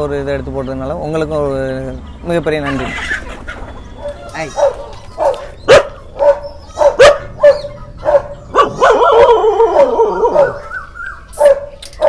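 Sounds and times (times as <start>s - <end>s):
dogs barking: 2.7s - 12.0s
dogs yelping and whining: 2.7s - 12.0s.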